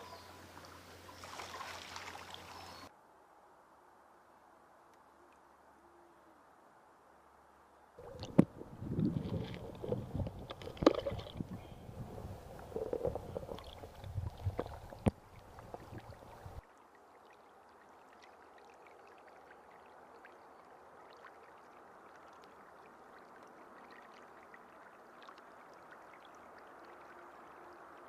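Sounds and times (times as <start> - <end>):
trickle of flowing water: 0.0 - 2.9, 8.0 - 28.0
splashing and knocking: 8.0 - 16.6.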